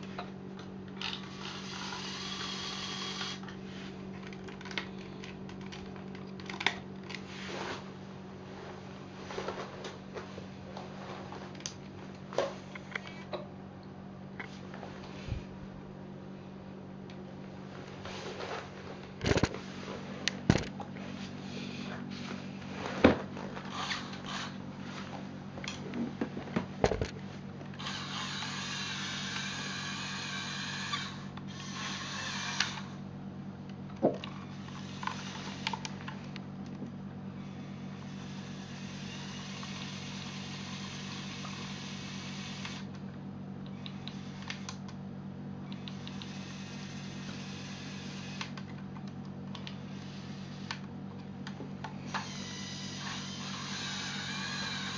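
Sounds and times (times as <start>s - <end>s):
whirring noise: 0.0s - 7.9s, 17.8s - 33.1s, 34.0s - 36.4s, 37.3s - 43.0s, 45.6s - 48.7s, 49.5s - 54.9s
steady low hum: 0.0s - 54.9s.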